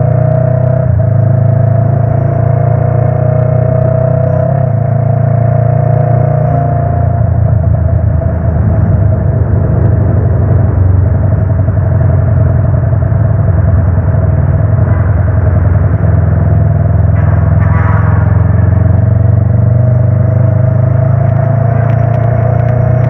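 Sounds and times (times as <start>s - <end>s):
motorcycle engine: 0.0s - 23.0s
road noise: 0.0s - 23.0s
wind rumbling on microphone: 6.0s - 23.0s.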